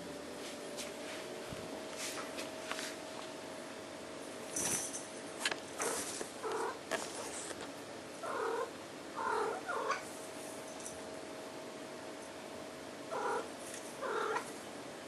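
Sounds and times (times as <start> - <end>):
rustling: 4.4 - 7.7.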